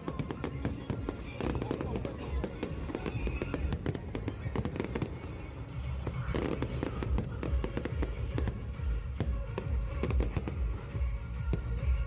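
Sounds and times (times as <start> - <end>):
fireworks bangs and crackles: 0.0 - 12.0
music playing: 0.0 - 12.0.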